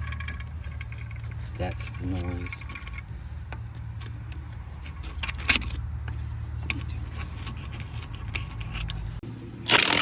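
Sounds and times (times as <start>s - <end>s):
wheel bearing drone: 0.0s - 10.0s.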